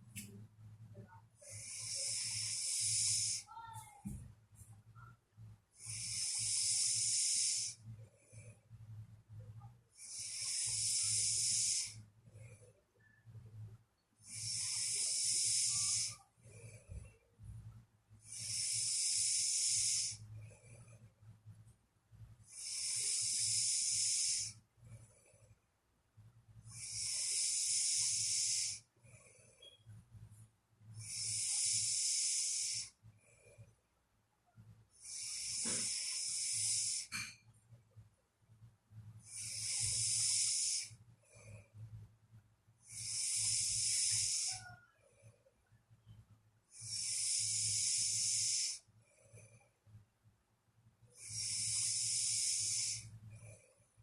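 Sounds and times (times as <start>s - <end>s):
faint low hum: 0.0s - 32.0s, 40.9s - 48.2s
person snoring: 1.4s - 3.6s, 5.8s - 7.8s, 10.0s - 12.0s, 14.2s - 16.2s, 18.3s - 20.2s, 22.5s - 24.6s, 26.7s - 28.8s, 31.0s - 32.9s, 35.0s - 37.2s, 39.3s - 41.0s, 42.9s - 44.8s, 46.8s - 48.8s, 51.2s - 53.1s.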